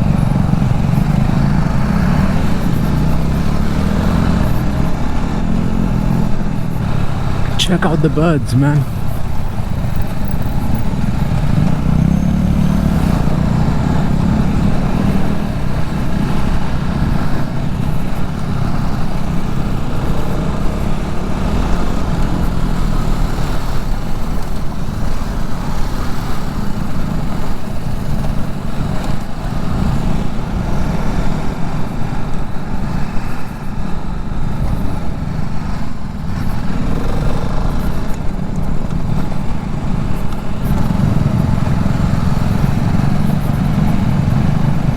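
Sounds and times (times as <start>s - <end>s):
motorcycle engine running: 8.9s - 44.9s.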